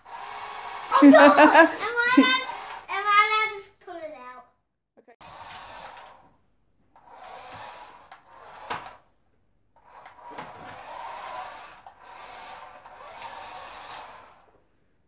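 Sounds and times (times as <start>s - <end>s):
toy car motor whirring: 0.0s - 3.4s, 5.2s - 6.3s, 7.0s - 9.1s, 9.8s - 14.6s.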